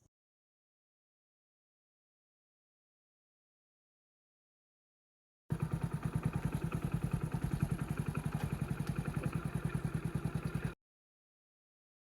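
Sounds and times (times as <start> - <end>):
small engine idling: 5.5 - 10.8.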